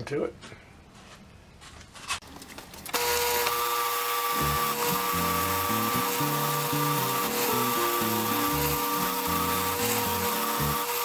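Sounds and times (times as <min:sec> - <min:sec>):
power wire wheel whining: 0:02.4 - 0:11.0.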